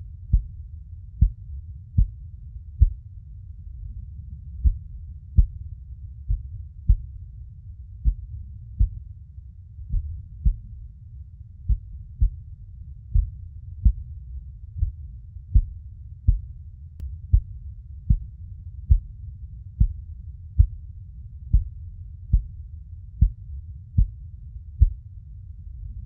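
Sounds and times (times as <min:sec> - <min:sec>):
steady low rumble: 0:00.0 - 0:26.0
slow heartbeat thumps: 0:00.2 - 0:03.1, 0:04.5 - 0:07.3, 0:07.9 - 0:09.2, 0:09.8 - 0:10.8, 0:11.6 - 0:16.6, 0:17.2 - 0:22.6, 0:23.2 - 0:25.0.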